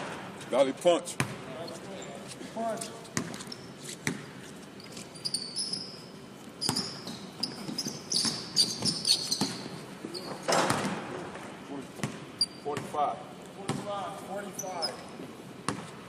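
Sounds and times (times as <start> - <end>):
basketballs bouncing on hardwood: 1.2 - 1.4, 4.0 - 4.3, 6.6 - 9.8, 10.5 - 11.0, 12.0 - 13.0, 13.6 - 13.9, 15.7 - 16.0
sneakers squeaking: 1.2 - 11.0, 12.0 - 13.0, 14.4 - 16.0.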